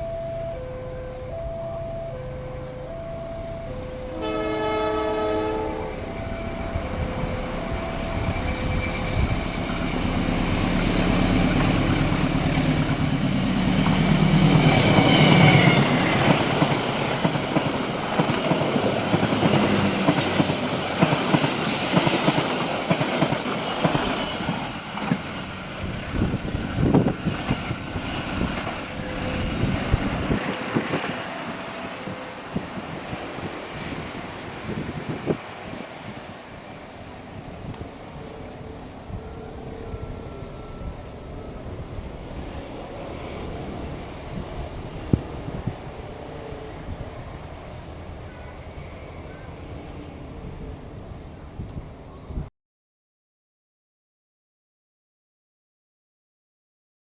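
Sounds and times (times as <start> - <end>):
level-crossing alarm tones: 0.0 - 34.1, 38.4 - 42.8
high squealing: 2.3 - 35.4
train horn: 3.3 - 35.4, 37.0 - 47.4
wheels clattering over rail joints: 6.0 - 39.0.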